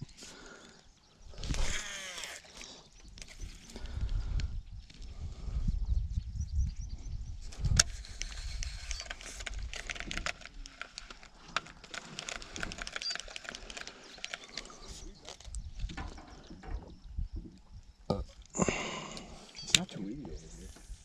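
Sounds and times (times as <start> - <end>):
low wind rumble on microphone: 3.1 - 10.8, 15.1 - 18.0
gear clicking and knocking: 8.1 - 14.8.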